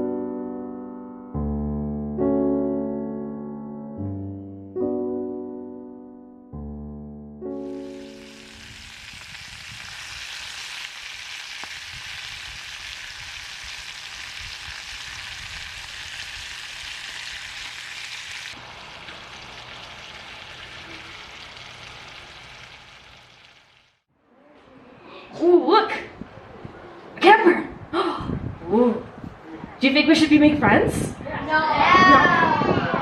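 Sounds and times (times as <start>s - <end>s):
steady hiss: 7.6s - 23.5s.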